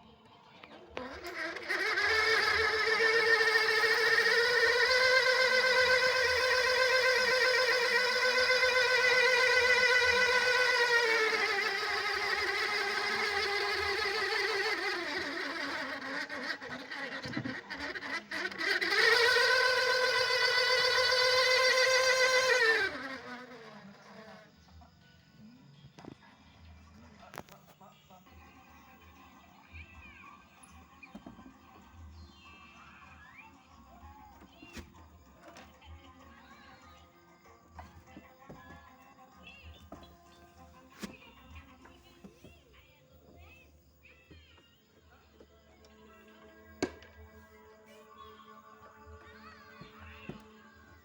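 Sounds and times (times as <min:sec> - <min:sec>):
electric fan whining drone: 0:00.9 - 0:24.8.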